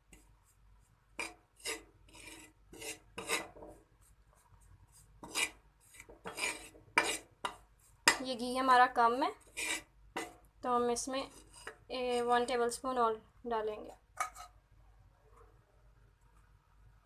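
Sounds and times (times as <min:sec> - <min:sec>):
utensil scraping in a pan: 0:00.0 - 0:08.4, 0:09.0 - 0:10.4, 0:11.0 - 0:12.5, 0:14.2 - 0:14.6.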